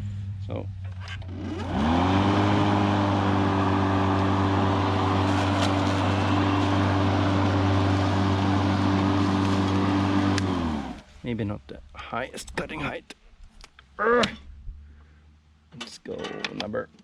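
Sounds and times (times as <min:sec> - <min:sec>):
electric lawnmower motor whine: 0:01.2 - 0:11.1.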